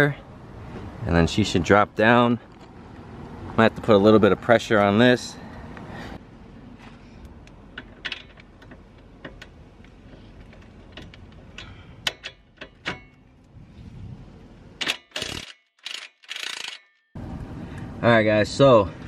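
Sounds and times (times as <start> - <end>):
metal tools clicking on bolt: 7.7 - 13.3, 14.8 - 17.0.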